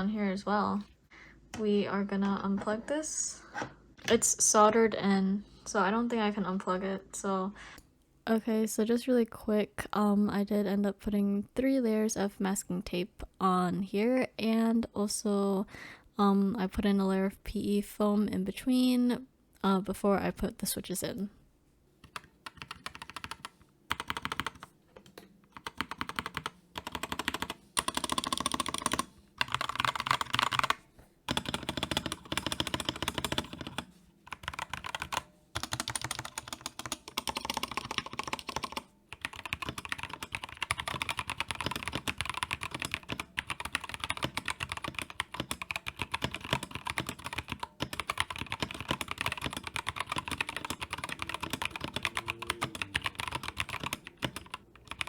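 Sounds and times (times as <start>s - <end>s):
mechanical keyboard typing: 22.0s - 55.0s.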